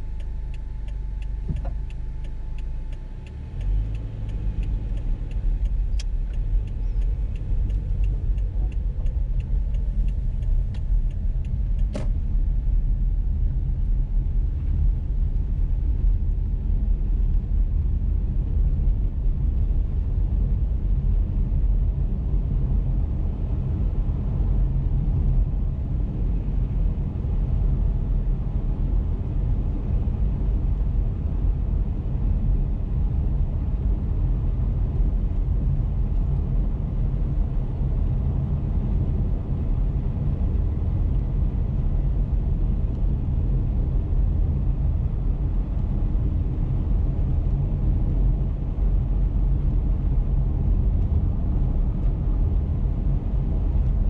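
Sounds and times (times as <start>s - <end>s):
road and tyre rumble: 0.0s - 54.0s.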